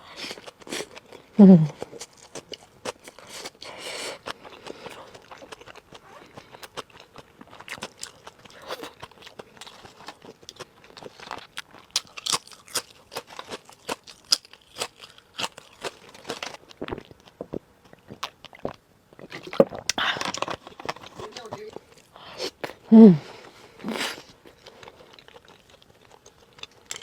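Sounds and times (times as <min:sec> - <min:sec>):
close chewing with wet clicks: 0:00.3 - 0:20.0, 0:24.3 - 0:27.0.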